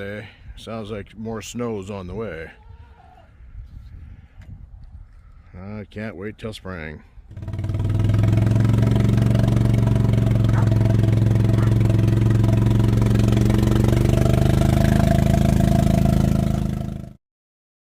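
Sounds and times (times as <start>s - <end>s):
engine running steadily: 7.3s - 17.1s.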